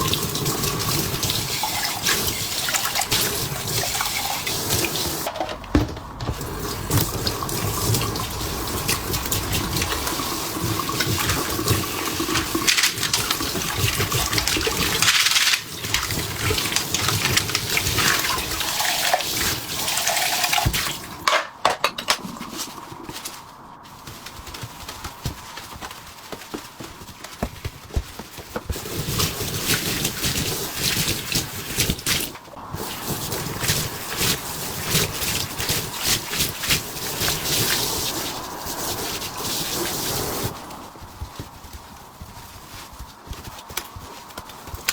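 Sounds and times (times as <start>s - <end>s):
water splashing in a sink: 0.0s - 21.3s, 28.7s - 40.8s
dishes clinking and knocking: 5.3s - 7.0s, 20.6s - 22.5s.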